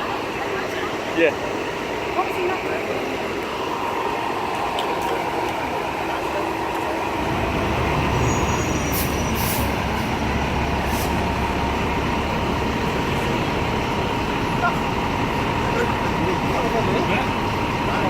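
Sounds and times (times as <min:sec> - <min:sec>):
city street noise: 0:00.0 - 0:18.0
fire engine diesel rumbling: 0:00.0 - 0:18.0
short hisses: 0:08.4 - 0:09.8, 0:10.8 - 0:11.2.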